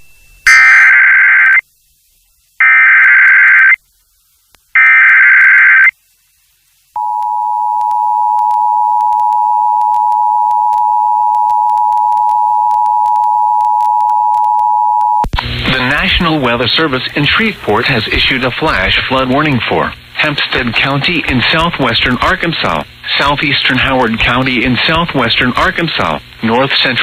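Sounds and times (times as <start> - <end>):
digital data tone bursts: 0.0 - 1.6, 2.6 - 3.8, 4.8 - 5.9
two-tone attention signal: 0.0 - 1.6.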